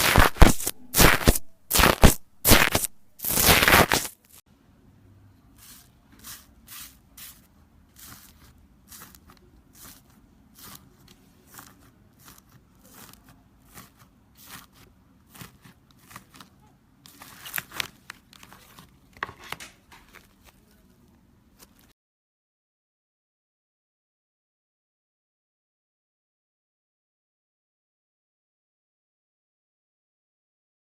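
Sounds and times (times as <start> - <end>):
slime crackling: 0.0 - 4.2, 7.9 - 18.9.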